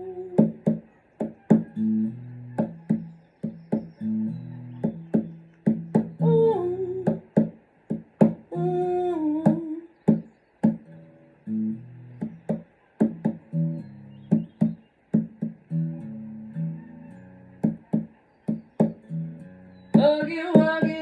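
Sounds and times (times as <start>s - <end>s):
acoustic guitar picking: 0.0s - 21.0s
percussive hits on guitar: 0.4s - 1.8s, 2.6s - 4.0s, 4.8s - 6.2s, 7.1s - 8.5s, 9.5s - 10.9s, 12.2s - 13.6s, 14.3s - 15.9s, 17.6s - 19.1s.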